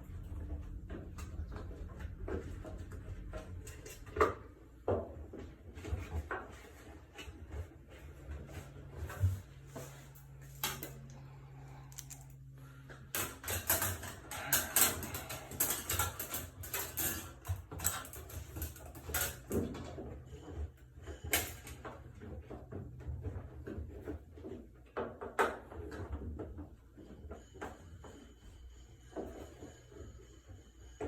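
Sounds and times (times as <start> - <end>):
clicks knocks and scrapes of hand work: 0.1 - 11.2, 12.9 - 31.0
steady low hum: 7.6 - 17.5.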